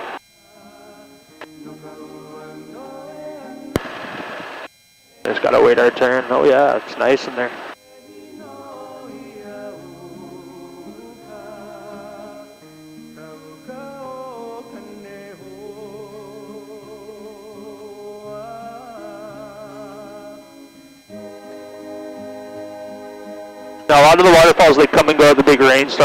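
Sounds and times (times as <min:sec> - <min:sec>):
person singing with accompaniment: 0:00.5 - 0:03.8, 0:07.8 - 0:23.9.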